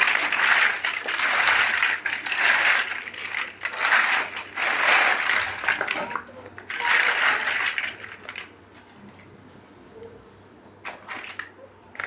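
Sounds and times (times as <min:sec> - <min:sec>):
plastic bricks rattling: 0:00.0 - 0:08.5.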